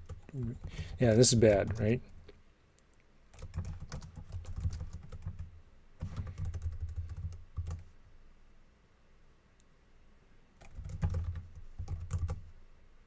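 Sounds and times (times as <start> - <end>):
computer keyboard typing: 0.0 - 2.0, 3.3 - 7.9, 10.6 - 12.4.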